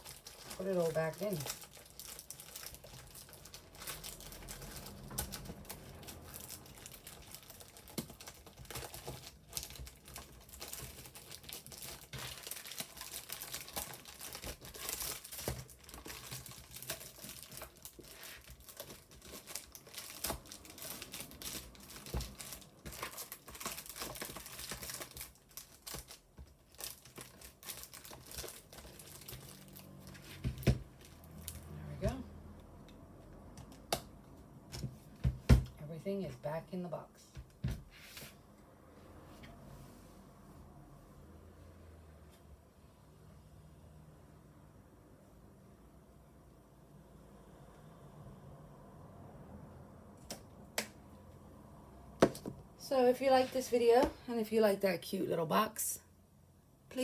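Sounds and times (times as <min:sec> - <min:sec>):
paper crinkling and rustling: 0:00.0 - 0:31.6
items knocking against cardboard box: 0:30.3 - 0:30.9, 0:34.8 - 0:35.7.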